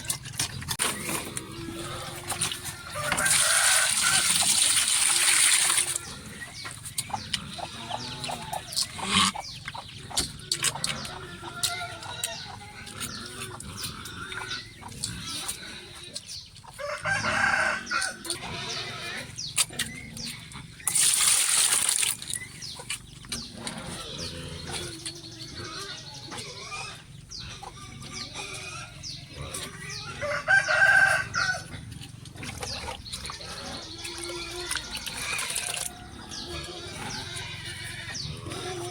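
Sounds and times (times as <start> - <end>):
rooster crowing: 2.9 - 4.3, 16.8 - 18.2, 30.2 - 31.7.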